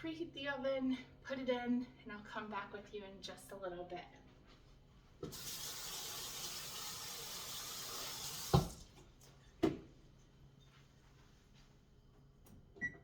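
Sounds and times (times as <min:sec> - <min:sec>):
kitchen tap running: 0:05.2 - 0:09.0.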